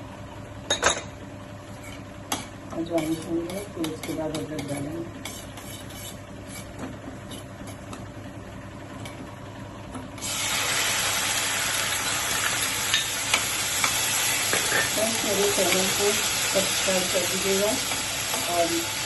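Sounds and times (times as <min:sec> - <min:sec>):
loud steady sizzle: 0:08.2 - 0:19.0
seeds stirred in hot oil: 0:10.2 - 0:19.0.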